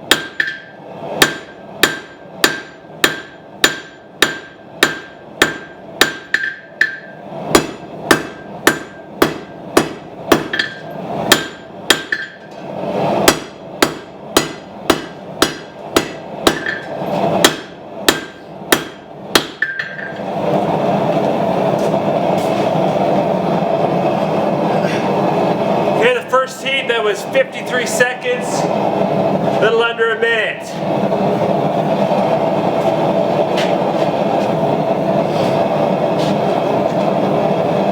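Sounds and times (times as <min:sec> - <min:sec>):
hammer striking hot steel on anvil: 0:00.0 - 0:12.6, 0:13.2 - 0:20.2
anvil ringing: 0:00.1 - 0:12.4.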